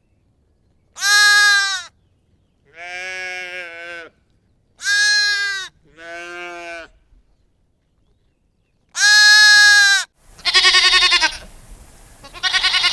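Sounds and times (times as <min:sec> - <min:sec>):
sheep bleating: 0:04.8 - 0:07.0, 0:09.0 - 0:12.9.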